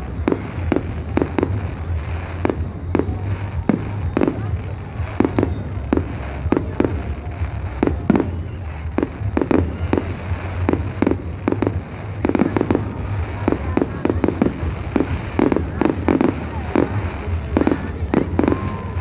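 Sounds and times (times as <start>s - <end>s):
fireworks bangs and pops: 0.0s - 19.0s
low rumble: 0.0s - 19.0s.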